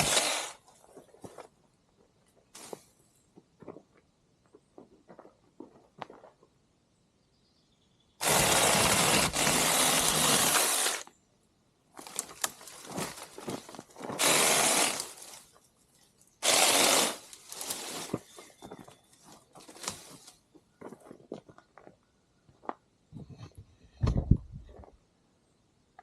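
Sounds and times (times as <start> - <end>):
mini chainsaw cutting branches: 0.0 - 0.6, 8.2 - 11.1, 14.1 - 15.4, 16.4 - 18.2
twigs crackling and snapping: 12.0 - 16.3, 17.2 - 18.8.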